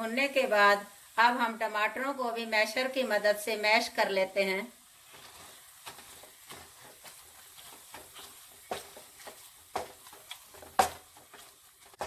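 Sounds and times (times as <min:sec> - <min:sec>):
faint sizzle: 0:00.0 - 0:12.0
masher mashing tomatoes: 0:05.1 - 0:12.0.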